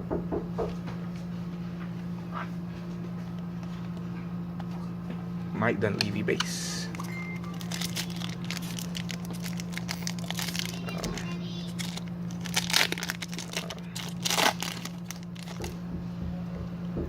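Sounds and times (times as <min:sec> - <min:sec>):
steady low hum: 0:00.0 - 0:17.0
card pack wrapper crinkling: 0:05.9 - 0:15.8.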